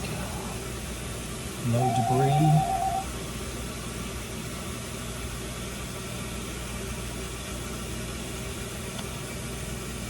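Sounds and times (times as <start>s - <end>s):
low hum: 1.6s - 3.1s.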